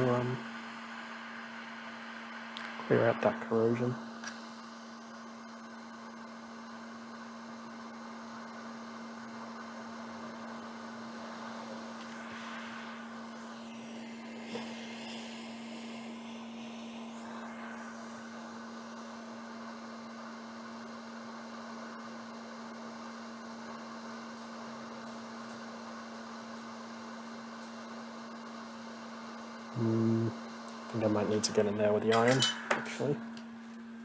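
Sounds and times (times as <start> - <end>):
hot air blower hissing: 0.0 - 4.0, 10.2 - 19.5, 32.4 - 33.7
constant hum: 29.7 - 33.8.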